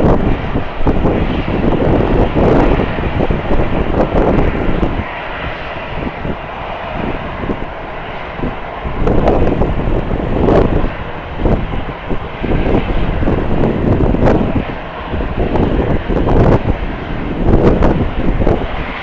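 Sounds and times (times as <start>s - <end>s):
airliner engine noise: 0.0s - 19.0s
wind buffeting microphone: 0.0s - 19.0s.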